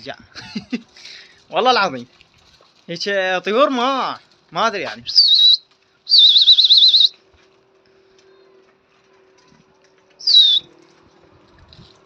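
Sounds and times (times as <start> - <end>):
person whistling: 5.2 - 7.1, 10.2 - 10.6.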